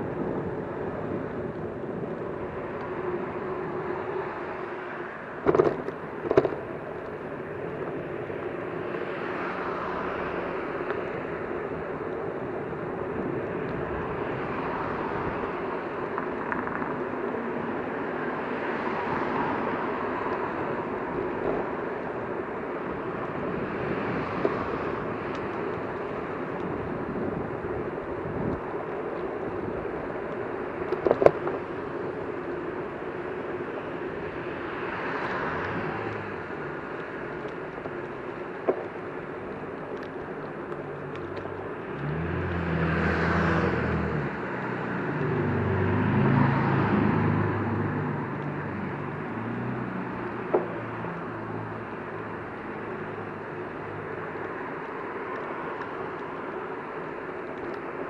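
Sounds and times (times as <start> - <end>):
outdoor traffic noise: 0.0 - 58.0.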